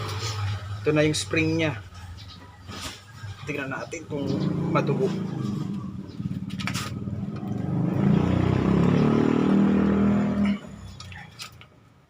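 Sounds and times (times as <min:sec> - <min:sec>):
motor engine revving: 0:03.6 - 0:11.0.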